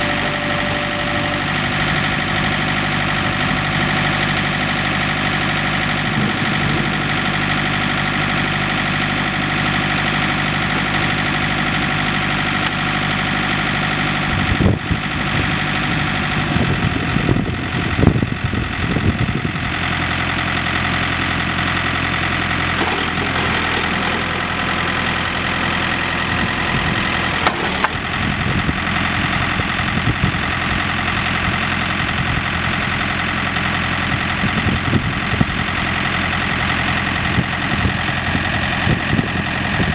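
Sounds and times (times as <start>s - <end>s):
diesel engine running: 0.0s - 39.9s
clunks and knocks: 27.1s - 28.0s.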